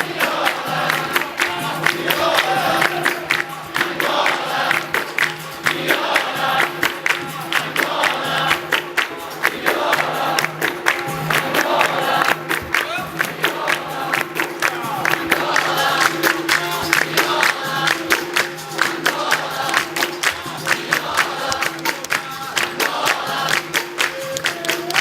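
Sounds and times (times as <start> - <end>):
group singing together: 0.0 - 25.0
hand claps: 0.0 - 25.0
percussion: 0.0 - 25.0
sharp percussive strikes: 0.0 - 25.0.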